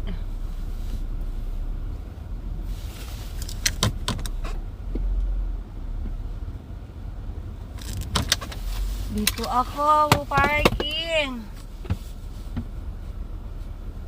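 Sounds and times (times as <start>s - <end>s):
car engine rumbling: 0.0s - 14.0s
sharp clicks and rattles: 3.4s - 4.6s, 7.7s - 11.2s.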